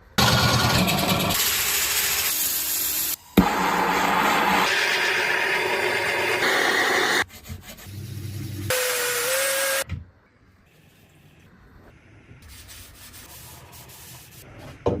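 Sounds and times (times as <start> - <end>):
hissing woodworking tool whine: 1.4 - 7.2.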